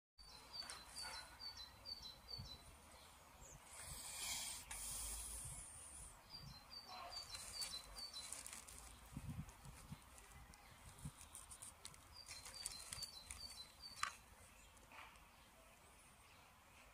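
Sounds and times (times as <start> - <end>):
small bird chirping: 0.2 - 5.2, 6.2 - 16.9
rush of hiss: 3.8 - 5.9.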